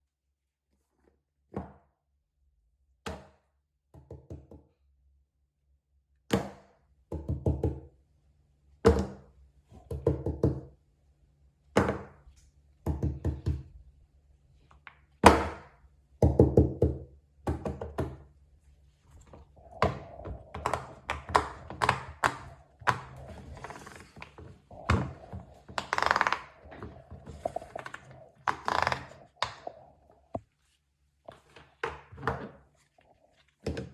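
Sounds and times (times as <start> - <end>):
plastic toys thunking and tapping: 19.6 - 30.4.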